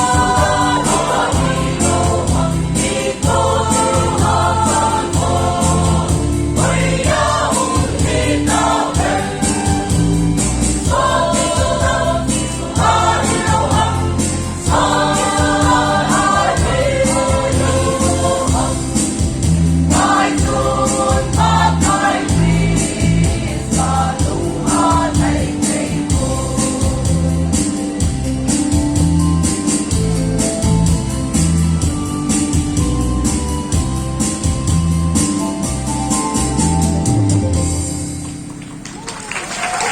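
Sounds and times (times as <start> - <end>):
choir singing gospel: 0.0 - 28.2
band with steady beat: 0.0 - 38.6.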